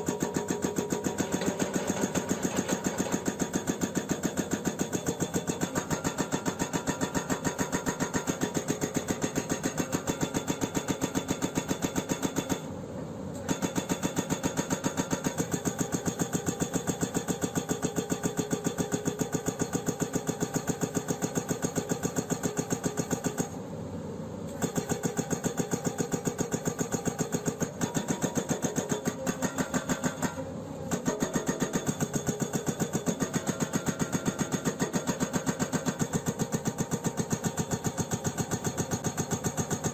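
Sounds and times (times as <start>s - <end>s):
hydraulic breaker hammering rock: 0.0s - 12.7s, 13.5s - 23.5s, 24.5s - 39.9s.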